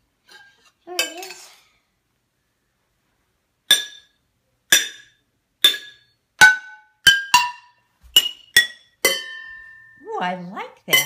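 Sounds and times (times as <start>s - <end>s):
spoon striking pans: 3.7s - 10.0s.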